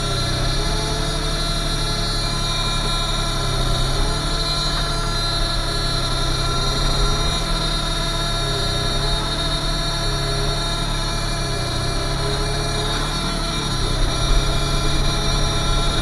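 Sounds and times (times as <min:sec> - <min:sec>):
excavator diesel engine running: 0:00.0 - 0:16.0.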